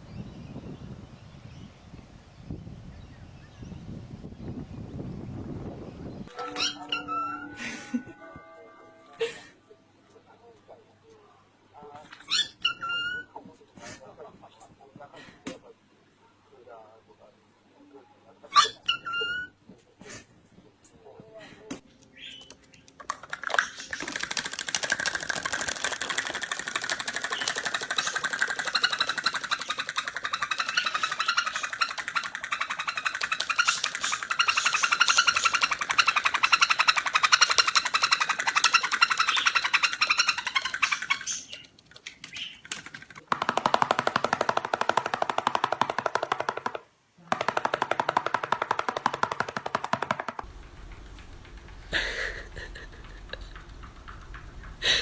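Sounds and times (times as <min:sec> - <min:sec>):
lower buzzy bird chatter: 0:22.1 - 0:43.2, 0:50.4 - 0:55.0
birds chattering in buzzy trills: 0:27.0 - 0:41.7.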